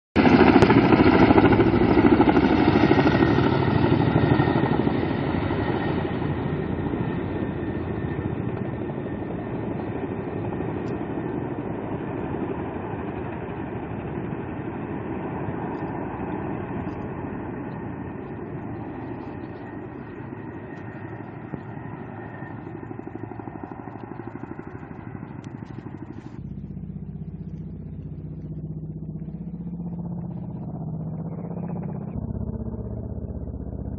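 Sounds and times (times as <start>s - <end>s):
engine idling: 24.9s - 33.9s.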